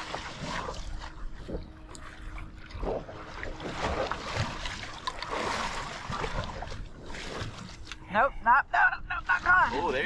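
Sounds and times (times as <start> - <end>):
water lapping against a boat hull: 0.0 - 10.0.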